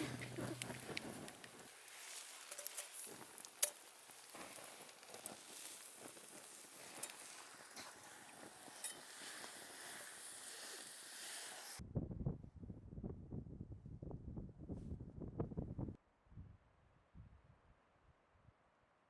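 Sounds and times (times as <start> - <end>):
campfire crackling: 0.0 - 11.8
campfire pops: 0.0 - 11.8.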